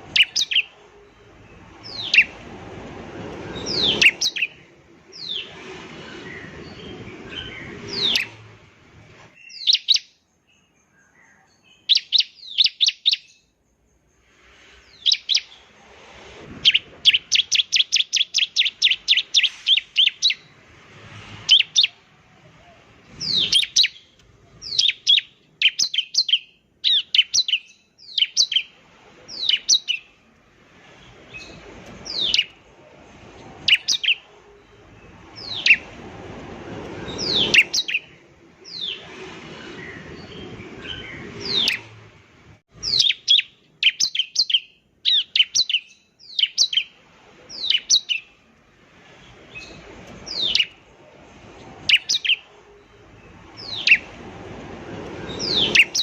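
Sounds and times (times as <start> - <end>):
bird singing sharp high notes: 0.0 - 2.4, 3.2 - 5.6, 23.2 - 30.2, 37.0 - 42.0.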